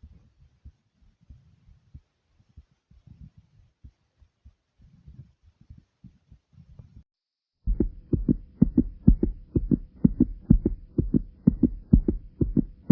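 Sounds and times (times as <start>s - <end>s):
heartbeat thumps: 7.7s - 12.9s.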